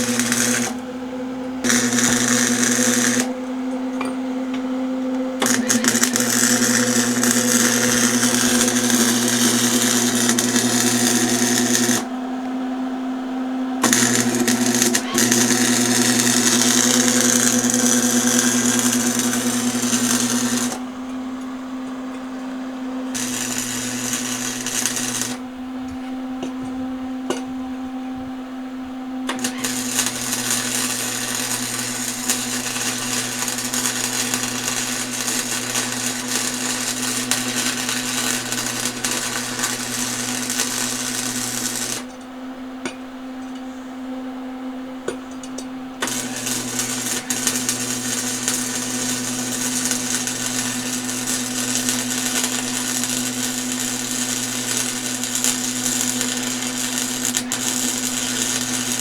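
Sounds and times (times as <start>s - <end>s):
welding arc crackling and sizzling: 0.0s - 3.4s, 5.4s - 12.1s, 13.8s - 20.9s, 23.0s - 25.5s, 29.3s - 42.2s, 45.5s - 59.0s
welding machine humming: 0.0s - 43.8s, 45.0s - 59.0s.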